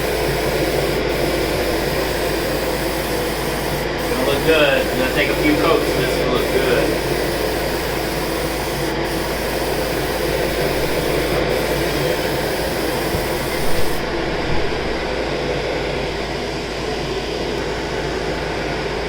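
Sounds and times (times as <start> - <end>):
spray gun hissing: 0.0 - 14.2
low machine drone: 0.0 - 19.0.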